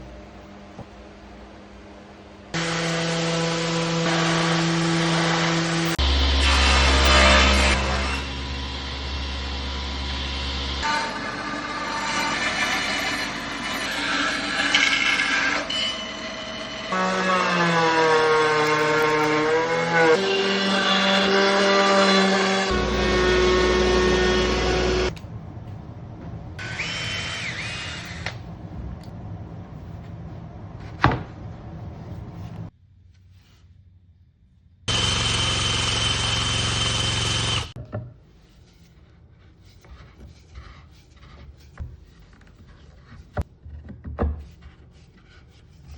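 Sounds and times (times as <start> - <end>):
power tool running: 2.6 - 25.2, 26.6 - 28.3, 34.9 - 37.8
wood knocks and handling: 30.8 - 31.5
power tool motor whine: 34.9 - 37.8.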